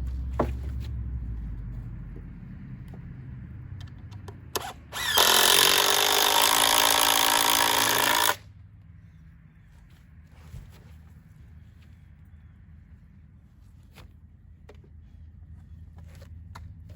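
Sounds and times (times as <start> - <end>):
power drill spinning: 4.6 - 8.4.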